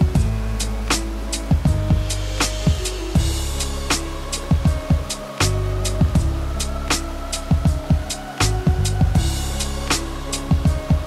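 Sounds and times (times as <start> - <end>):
kick drum: 0.0 - 0.4, 1.5 - 3.5, 4.5 - 5.2, 6.0 - 6.4, 7.5 - 9.5, 10.5 - 11.0
hi-hat strikes: 0.0 - 11.0
sustained bass line: 0.0 - 11.0.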